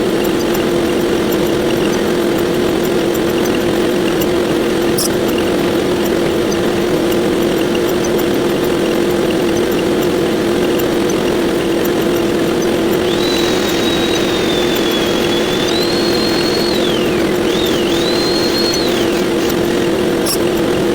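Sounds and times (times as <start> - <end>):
constant hum: 12.9 - 20.9
high whistling tone: 13.0 - 19.9.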